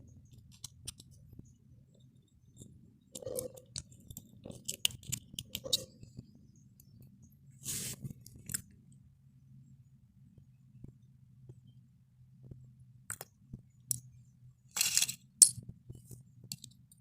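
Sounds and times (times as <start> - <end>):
small parts clicking and crunching: 2.6 - 5.8, 14.8 - 15.6.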